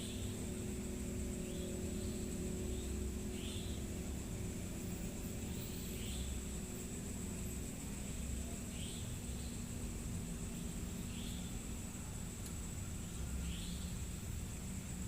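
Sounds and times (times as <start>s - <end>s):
steady low rumble: 0.0s - 15.0s.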